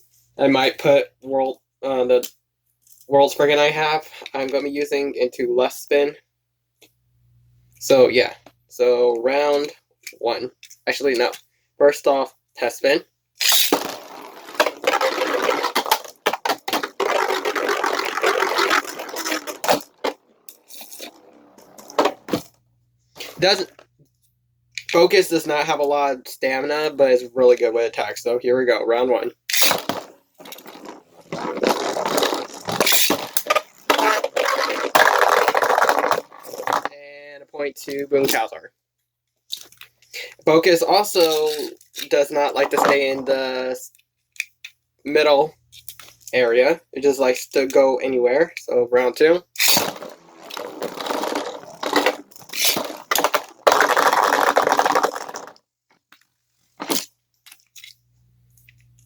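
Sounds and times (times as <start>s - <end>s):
spinning tops scraping and grinding: 13.4s - 22.5s, 29.5s - 36.9s, 49.6s - 55.6s.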